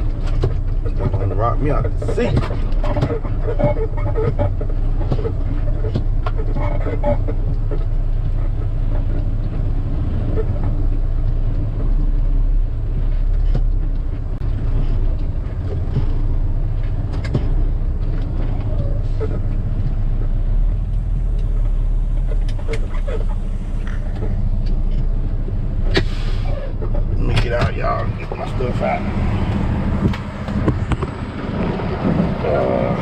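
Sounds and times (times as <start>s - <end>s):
cab knocks and rattles: 0.0s - 26.0s
diesel truck engine rumbling: 0.0s - 33.0s.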